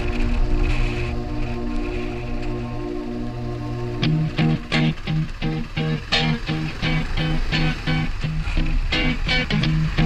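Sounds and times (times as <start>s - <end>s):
held chord: 0.0s - 10.0s
steady rhythmic beat: 0.0s - 10.0s.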